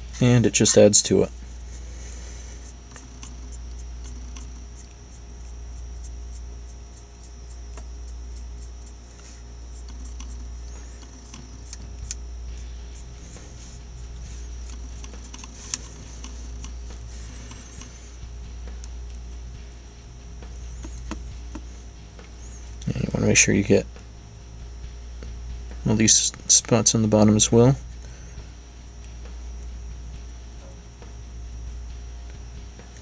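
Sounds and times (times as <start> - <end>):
paintbrush scratching on plastic: 0.0 - 23.7
steady low hum: 0.0 - 33.0.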